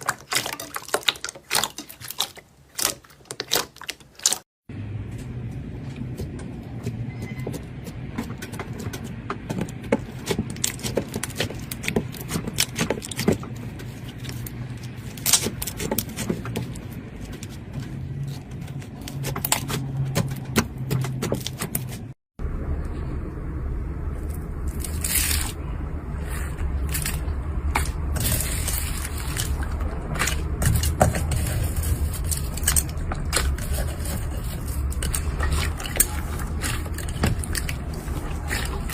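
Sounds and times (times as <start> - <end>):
low hum: 22.4 - 38.9.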